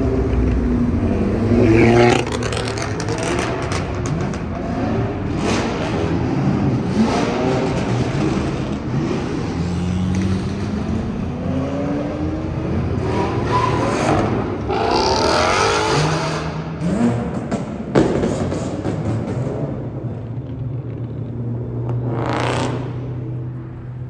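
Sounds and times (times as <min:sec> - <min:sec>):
car accelerating: 0:00.0 - 0:24.0
car engines revving: 0:00.0 - 0:24.0.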